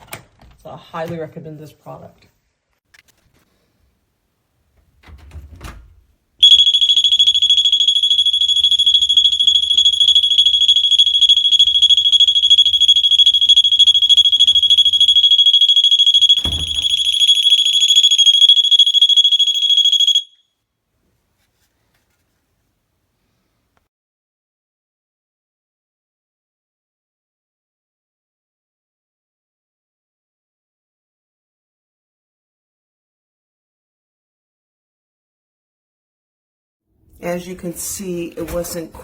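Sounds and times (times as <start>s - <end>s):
door stop alarm tone: 6.4s - 20.4s.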